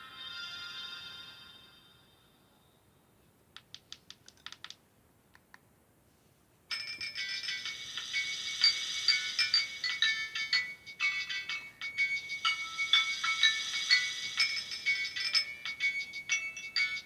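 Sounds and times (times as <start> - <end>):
keypad clicks: 3.6 - 4.8
phone ringtone: 6.7 - 17.0
polyphonic ringtone melody: 6.7 - 17.0.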